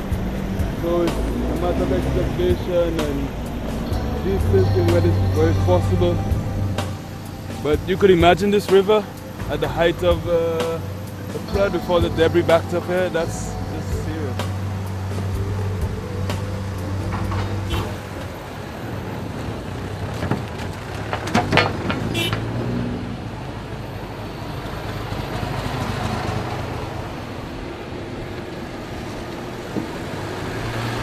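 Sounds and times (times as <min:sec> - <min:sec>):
vehicle engine running: 0:00.0 - 0:21.2
road noise: 0:00.0 - 0:31.0.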